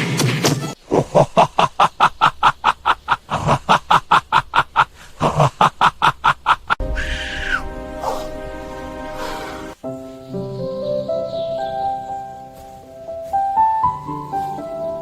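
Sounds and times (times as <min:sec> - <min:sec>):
rhythmic snickering laughter: 0:00.9 - 0:06.8.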